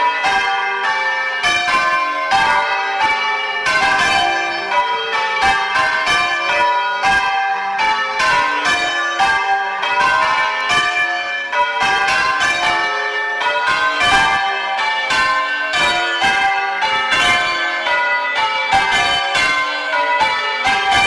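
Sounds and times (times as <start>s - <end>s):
church bells change ringing: 0.0s - 21.0s.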